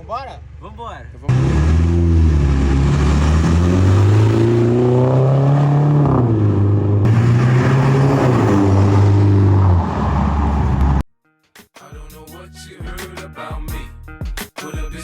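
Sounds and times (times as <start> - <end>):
unmuffled car engine revving: 1.2 - 11.0.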